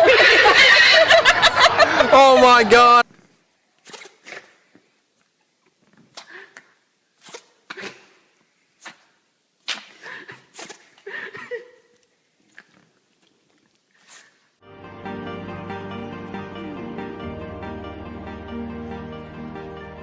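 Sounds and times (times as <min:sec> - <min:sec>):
animal sneezing: 0:03.8 - 0:04.6, 0:07.2 - 0:08.2, 0:08.8 - 0:11.0.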